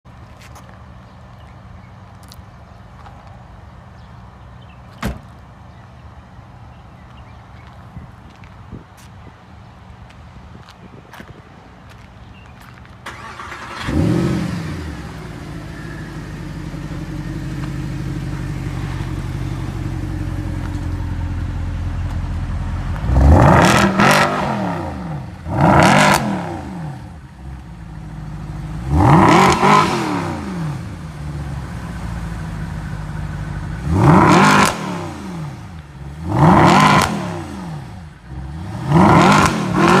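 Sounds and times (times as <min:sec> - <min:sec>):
car engine starting: 0:13.0 - 0:40.0
engine revving: 0:13.1 - 0:20.4, 0:23.0 - 0:27.2, 0:28.4 - 0:31.7, 0:33.6 - 0:40.0
car engine idling: 0:13.1 - 0:23.2, 0:31.0 - 0:34.2.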